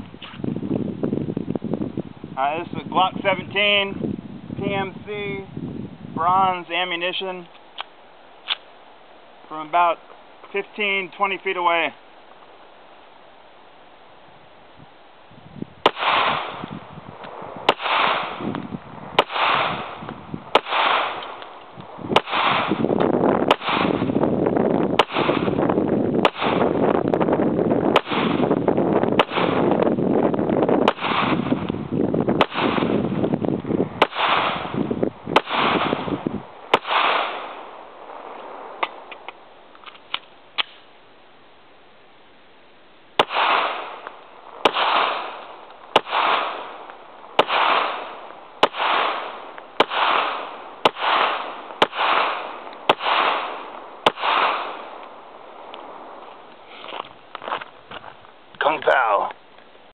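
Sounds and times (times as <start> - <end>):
pistol reloading clicks: 7.5 - 8.7, 38.8 - 40.8
pistol shots echoing: 15.8 - 16.7, 17.6 - 18.5, 19.2 - 21.5, 22.1 - 24.2, 25.0 - 25.6, 26.2 - 26.8, 28.0 - 28.6, 29.2 - 29.8, 30.9 - 31.5, 32.4 - 33.0, 34.0 - 39.0, 43.2 - 55.0.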